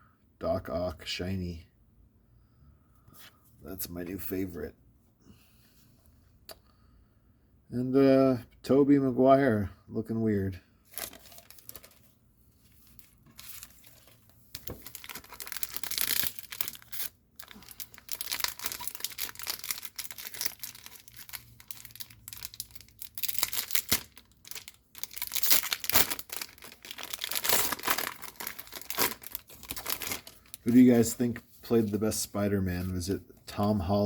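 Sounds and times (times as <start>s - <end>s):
paper wrapper crinkling and tearing: 10.9s - 32.0s.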